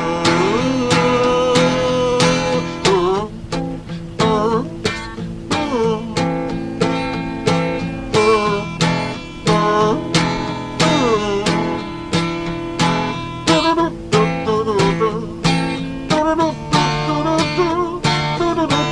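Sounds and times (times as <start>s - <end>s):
acoustic guitar strumming: 0.0s - 18.9s.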